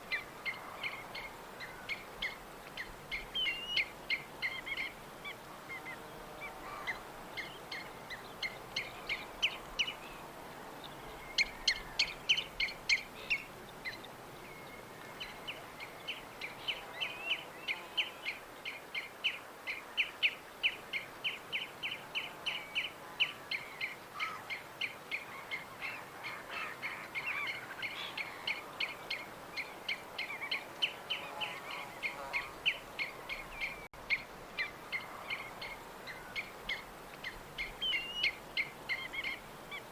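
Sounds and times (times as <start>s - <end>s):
faint steady hiss: 0.0s - 39.9s
small songbirds chirping: 27.1s - 39.9s.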